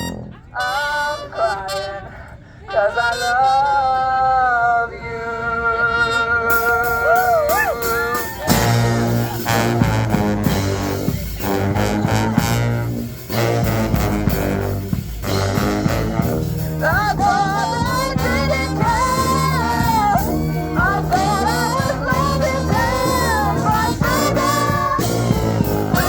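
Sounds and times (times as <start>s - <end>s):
brass band playing: 0.0s - 4.0s, 5.9s - 26.0s
wavering lead melody: 6.8s - 26.0s.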